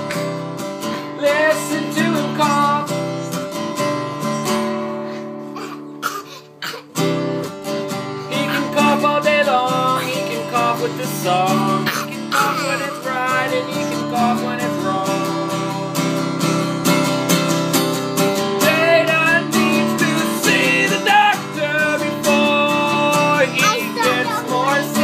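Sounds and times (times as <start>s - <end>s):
person singing: 0.0s - 3.6s, 8.3s - 16.3s, 18.6s - 25.0s
strummed acoustic guitar: 0.0s - 25.0s.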